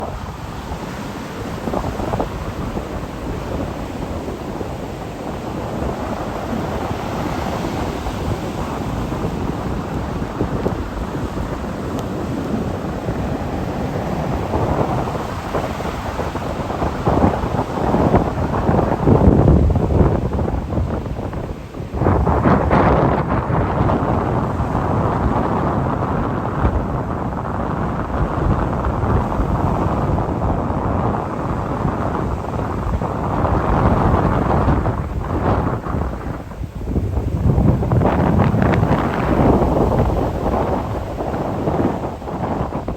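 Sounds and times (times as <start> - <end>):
surf: 0.0 - 42.9
wind buffeting microphone: 0.0 - 42.9.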